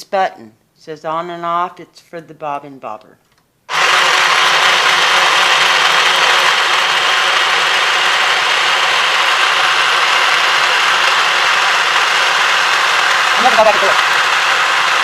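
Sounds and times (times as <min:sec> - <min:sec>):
sewing machine motor running: 0:12.8 - 0:15.0.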